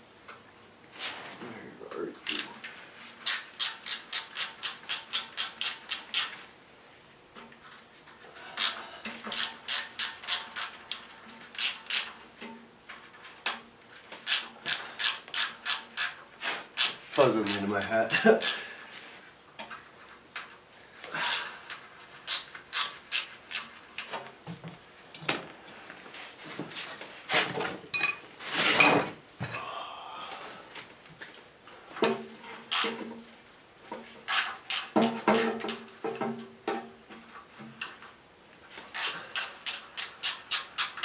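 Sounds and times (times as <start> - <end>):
hand tools clinking on metal: 27.9 - 28.3.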